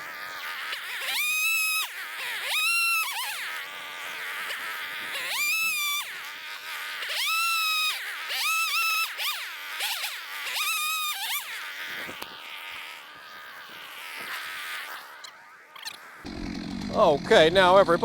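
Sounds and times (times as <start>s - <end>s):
chainsaw revving: 16.0s - 18.0s.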